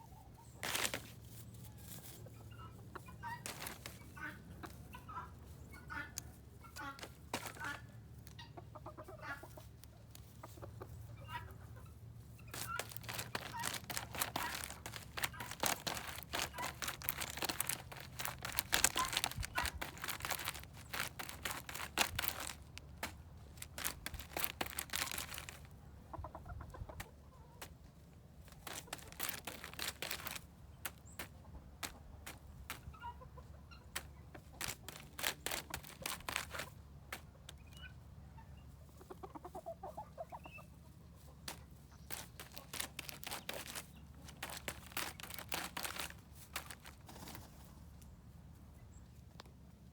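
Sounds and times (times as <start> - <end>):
soft chicken clucks: 0.0 - 49.9
rooster pecking bubble wrap pops: 6.8 - 7.8, 12.6 - 25.7, 28.5 - 32.9, 34.0 - 37.3, 41.5 - 47.4.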